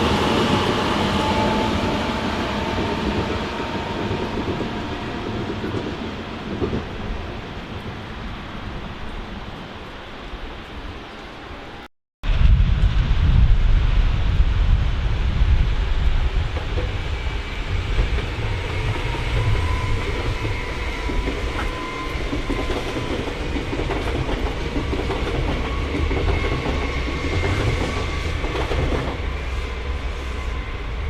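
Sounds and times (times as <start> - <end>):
train rumbling past: 0.0 - 31.0
faint thin squeal: 18.7 - 23.0.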